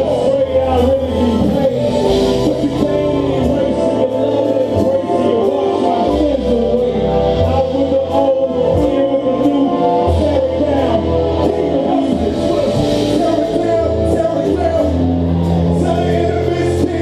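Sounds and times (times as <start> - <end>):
band with bass and drums: 0.0 - 17.0
singers: 0.0 - 17.0.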